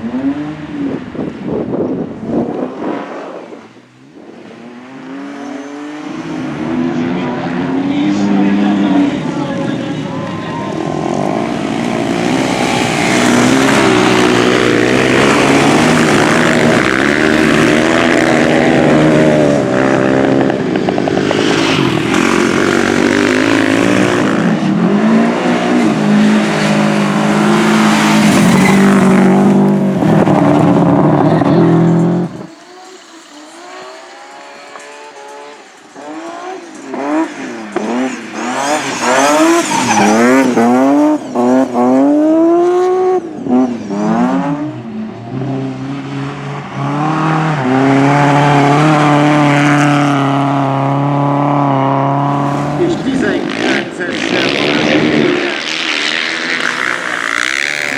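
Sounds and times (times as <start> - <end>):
racing engines revving: 0.0 - 57.9.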